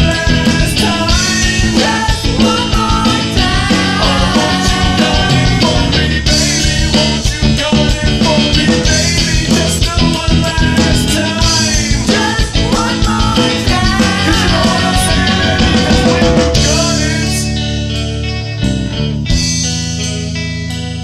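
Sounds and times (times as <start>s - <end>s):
rock band song: 0.0s - 21.0s
drum hits: 11.8s - 17.0s.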